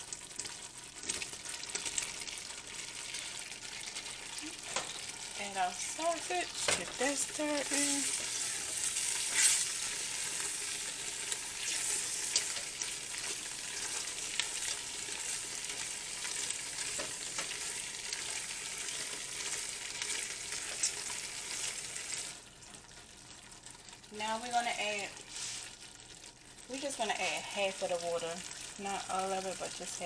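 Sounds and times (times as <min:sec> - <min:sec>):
sausage sizzling in a pot: 0:00.0 - 0:30.0.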